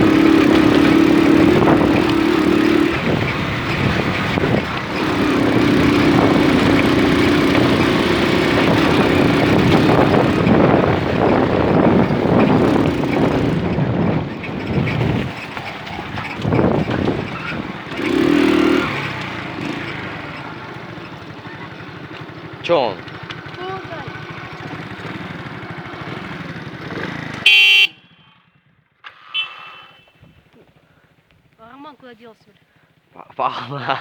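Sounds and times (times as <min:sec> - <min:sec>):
moped engine revving: 0:00.0 - 0:32.9.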